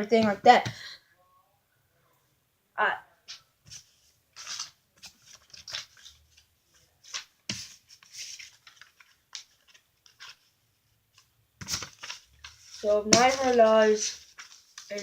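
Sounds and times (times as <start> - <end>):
banknotes rustling and flicking: 3.3 - 15.0.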